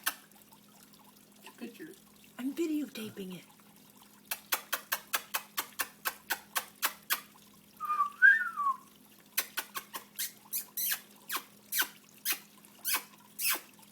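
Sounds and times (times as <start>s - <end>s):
water dripping: 0.0s - 13.9s
whistled call: 7.8s - 8.9s.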